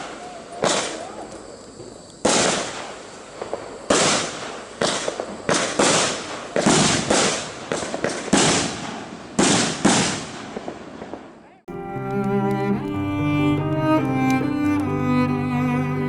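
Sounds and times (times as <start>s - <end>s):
fireworks bangs with crackle: 0.0s - 11.6s.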